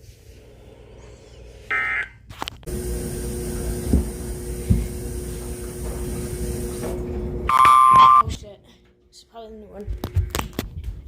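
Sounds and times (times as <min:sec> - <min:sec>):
data tones burst: 0:07.5 - 0:08.2.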